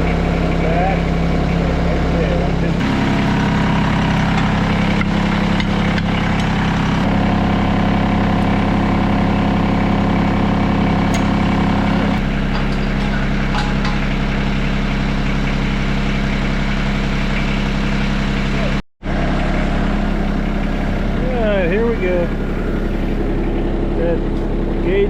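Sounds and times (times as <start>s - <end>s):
tractor diesel engine running: 0.0s - 25.0s.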